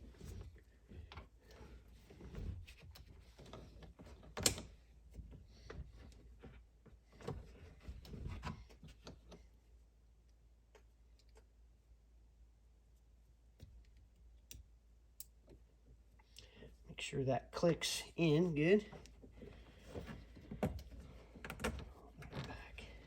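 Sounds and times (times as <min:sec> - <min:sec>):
hands handling wiring and plastic: 0:18.7 - 0:23.0.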